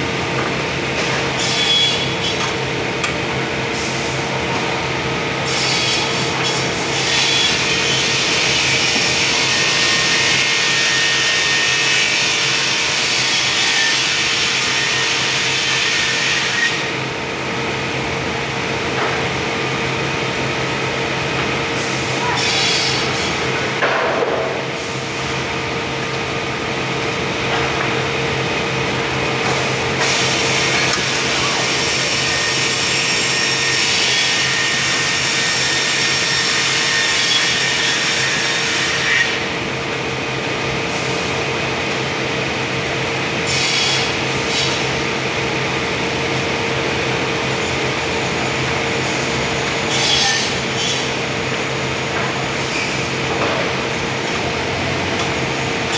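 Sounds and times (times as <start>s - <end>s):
sawmill machinery humming: 0.0s - 55.9s
saw cutting timber: 5.5s - 17.0s, 29.4s - 39.5s, 43.4s - 45.0s, 49.0s - 51.2s.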